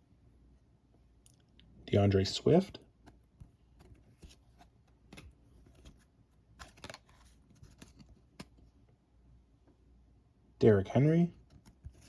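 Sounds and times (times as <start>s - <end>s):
trading cards flipped by hand: 3.0s - 8.6s.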